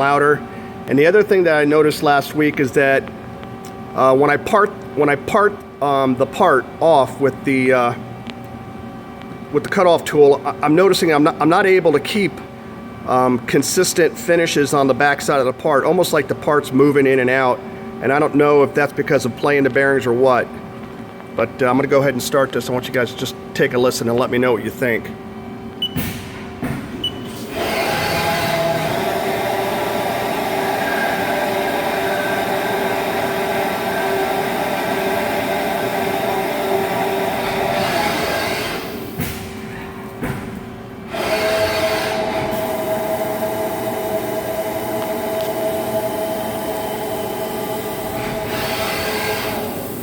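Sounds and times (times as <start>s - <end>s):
lathe spindle whine: 27.4s - 39.0s, 41.1s - 50.0s.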